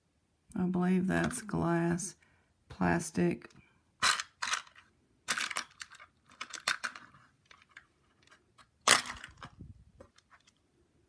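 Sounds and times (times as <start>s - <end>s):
beads clicking and rustling in box: 4.0s - 10.6s.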